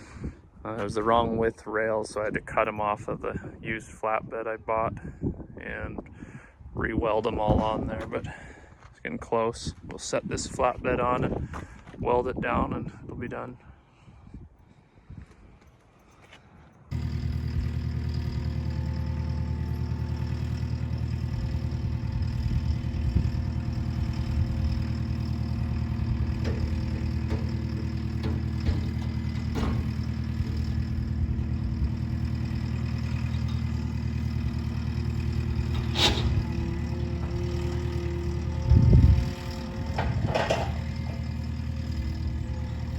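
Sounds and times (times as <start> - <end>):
engine idling: 16.9 - 42.9
sharp metallic knocks and clanks: 22.3 - 33.9, 34.6 - 38.1, 39.2 - 41.3.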